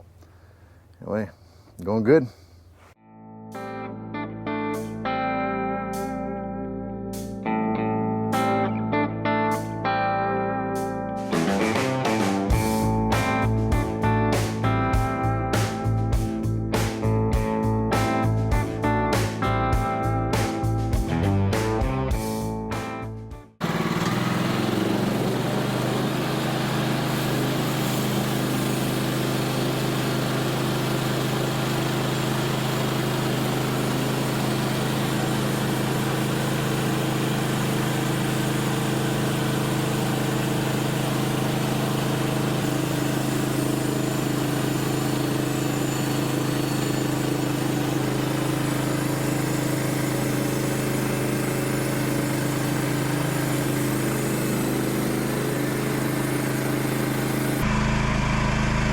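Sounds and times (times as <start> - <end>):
sawmill engine running: 11.3 - 16.2, 23.6 - 58.9.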